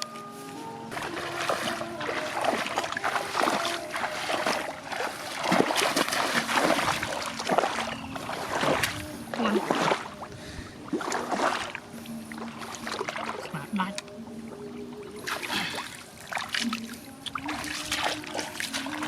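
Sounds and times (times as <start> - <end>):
faint music: 0.0 - 19.0
water splashing and sloshing: 0.0 - 19.0.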